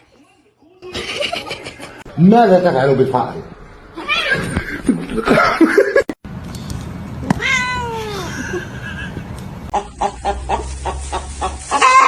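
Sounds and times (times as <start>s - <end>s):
cat meowing: 7.3s - 8.4s.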